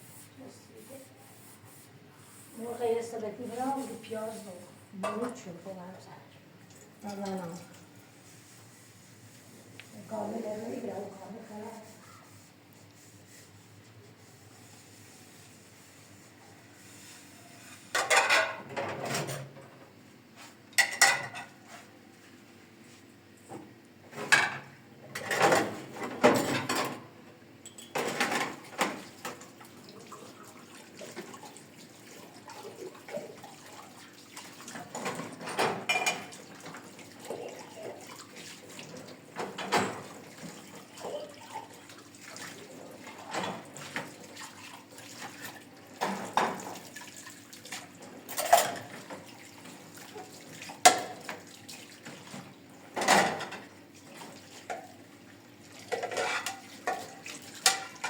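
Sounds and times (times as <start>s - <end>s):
dishes and pots clattering: 17.9s - 19.8s, 20.7s - 21.6s, 24.1s - 27.0s, 27.6s - 29.4s, 34.7s - 37.9s, 39.4s - 41.7s, 45.2s - 46.8s, 48.0s - 49.4s, 50.1s - 55.0s, 55.8s - 58.0s
water running and splashing: 29.0s - 35.4s, 36.1s - 58.0s.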